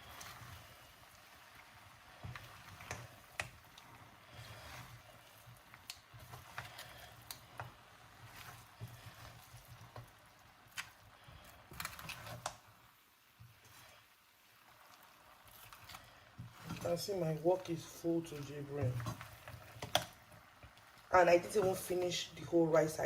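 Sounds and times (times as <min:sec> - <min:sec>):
spatula scraping a wok: 0:00.0 - 0:12.6, 0:15.1 - 0:20.6
faint sizzle: 0:00.0 - 0:23.0.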